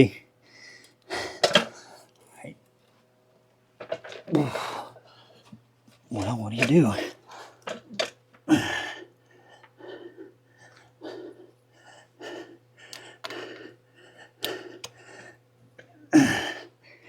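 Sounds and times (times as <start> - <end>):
man breathing hard: 0.4 - 2.1, 4.3 - 5.4, 8.5 - 15.4.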